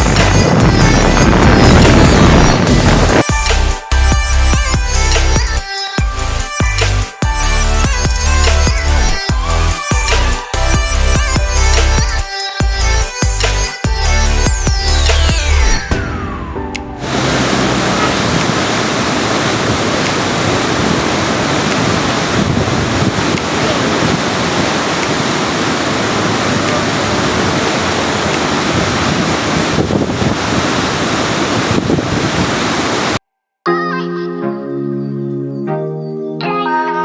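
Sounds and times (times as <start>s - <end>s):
rushing water roar: 0.0s - 3.2s, 17.0s - 33.2s.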